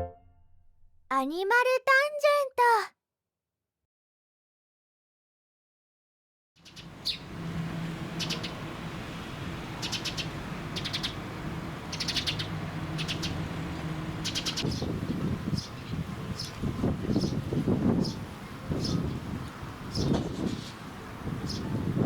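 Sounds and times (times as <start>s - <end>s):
sparrows chirping: 6.6s - 22.0s.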